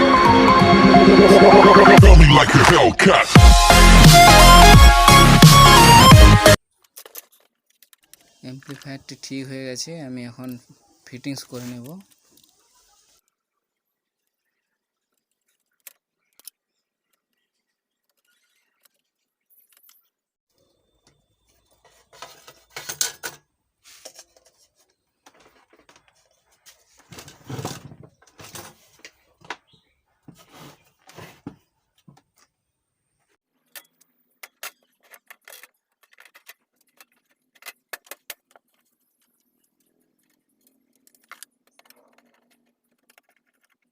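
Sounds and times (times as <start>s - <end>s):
metal parts clinking: 6.8s - 8.8s, 33.7s - 43.9s.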